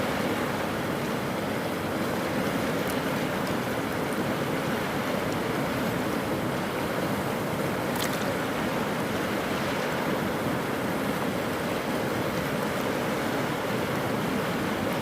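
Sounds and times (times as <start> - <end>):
swollen river water rushing: 0.0 - 15.0.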